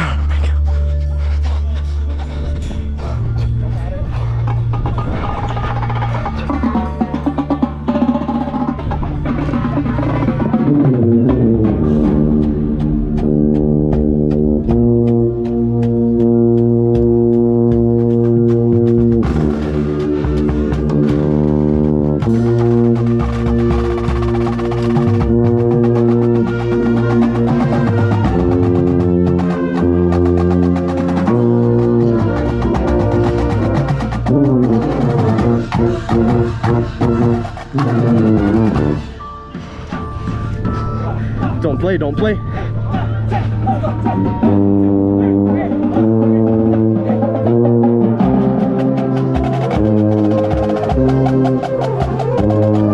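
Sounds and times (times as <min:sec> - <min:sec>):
brass band playing sustained chords: 0:00.0 - 0:39.4, 0:43.2 - 0:52.9
sharp percussion strikes: 0:04.3 - 0:52.9
contrabass bugles: 0:13.2 - 0:39.2.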